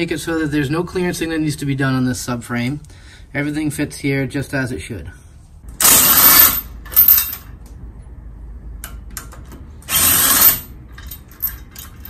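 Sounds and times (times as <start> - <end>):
power tool running: 9.9 - 10.7.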